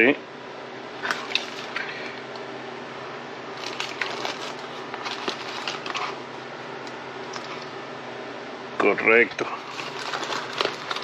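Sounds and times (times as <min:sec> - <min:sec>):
background hum: 0:00.0 - 0:11.0
hands handling small parts: 0:03.6 - 0:06.2, 0:07.3 - 0:07.7, 0:09.6 - 0:11.0.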